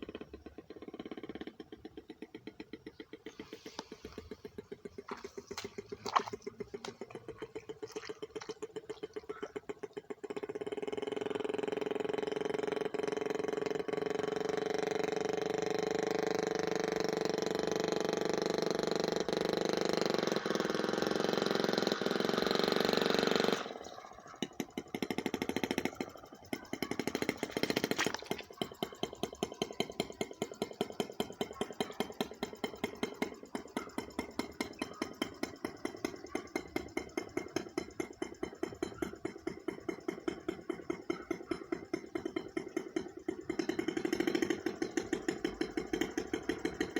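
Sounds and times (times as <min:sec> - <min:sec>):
small boat engine running: 0:00.0 - 0:46.9.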